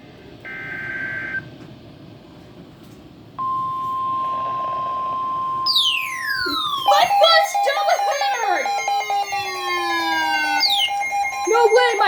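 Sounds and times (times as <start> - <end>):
digital header tone burst: 3.4 - 12.0
steady warning alarm tone: 3.4 - 12.0
falling pitch sweep: 4.2 - 12.0.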